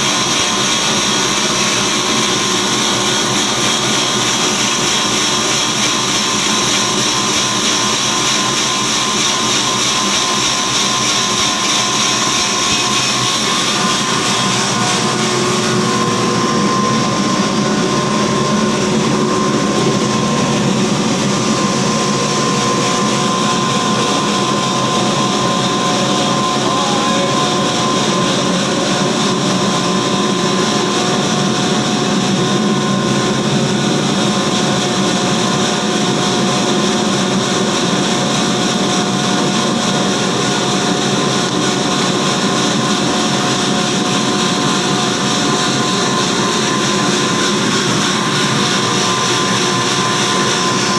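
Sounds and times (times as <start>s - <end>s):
grinder machine running: 0.0s - 50.9s.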